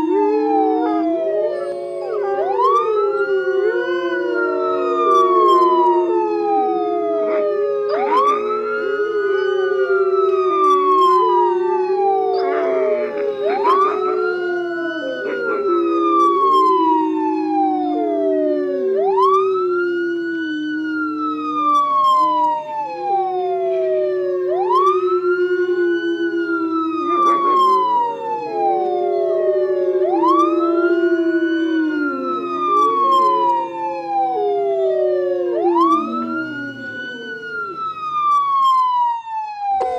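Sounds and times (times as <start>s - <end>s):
dogs howling: 0.0s - 39.0s
emergency siren wailing: 0.0s - 39.9s.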